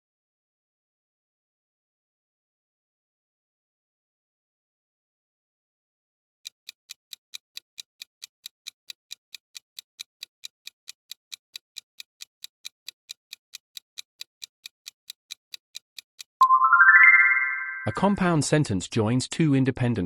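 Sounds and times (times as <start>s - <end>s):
clock-like timer ticking: 6.5s - 16.4s.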